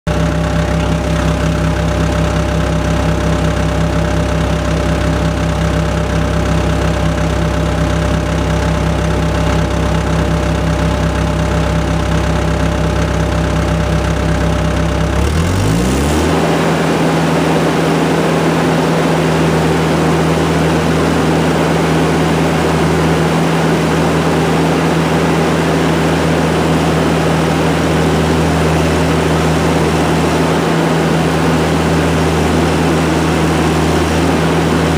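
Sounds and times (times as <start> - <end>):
diesel engine running: 0.1 - 34.9.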